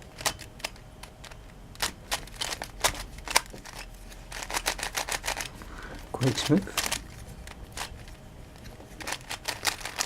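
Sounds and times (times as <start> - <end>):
plastic puzzle clicking: 6.2 - 8.2, 9.0 - 10.0.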